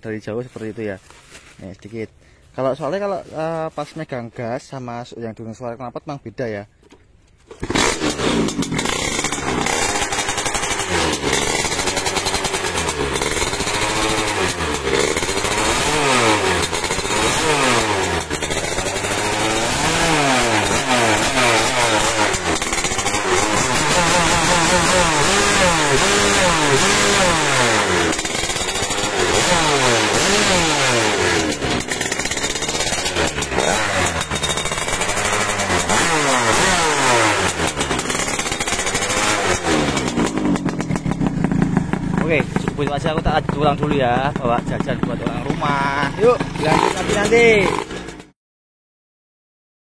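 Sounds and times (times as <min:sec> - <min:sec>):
scooter engine revving hard: 0:07.5 - 0:48.4.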